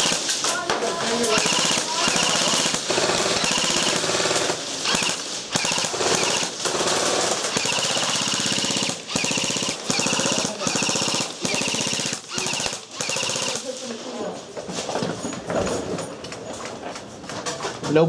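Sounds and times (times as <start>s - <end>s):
airsoft guns firing full auto: 0.0s - 14.0s.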